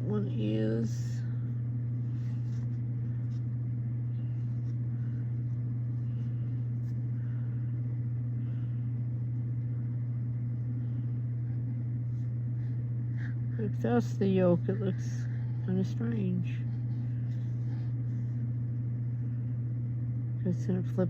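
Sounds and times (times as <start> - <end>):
low electric appliance hum: 0.0 - 21.0.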